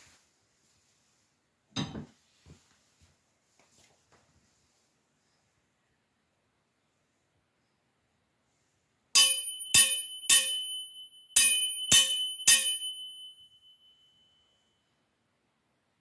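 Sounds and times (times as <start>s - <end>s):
metal sai strikes ringing: 9.2s - 14.0s.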